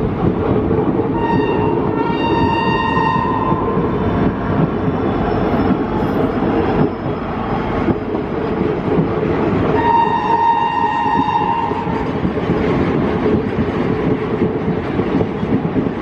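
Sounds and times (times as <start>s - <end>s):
train rumbling on rails: 0.0s - 16.0s
locomotive horn blast: 1.2s - 3.8s, 9.8s - 11.9s.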